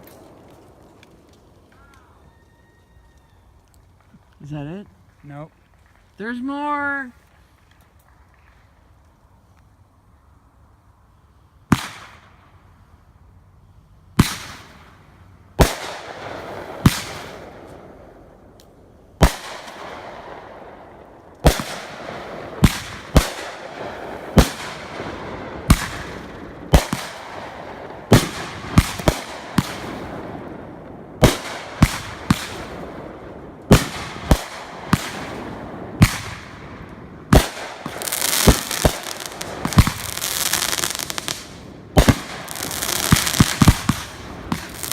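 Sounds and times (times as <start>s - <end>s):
fireworks crackling: 0.0s - 2.4s, 3.2s - 44.9s
fireworks bangs: 15.6s - 18.1s, 19.2s - 44.9s.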